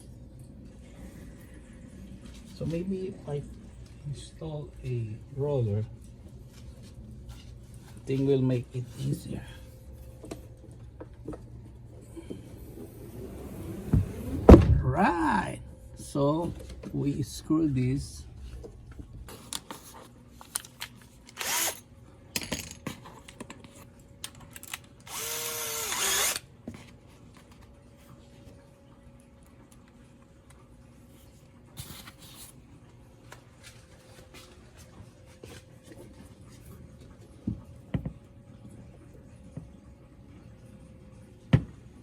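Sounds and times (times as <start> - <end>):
power drill driving screws: 21.3 - 21.8, 24.6 - 26.4.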